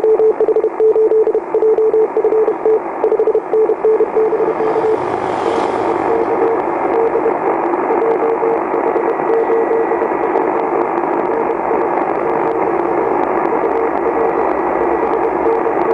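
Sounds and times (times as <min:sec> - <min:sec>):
morse code beeping: 0:00.0 - 0:04.4
radio band noise rush: 0:04.0 - 0:08.4.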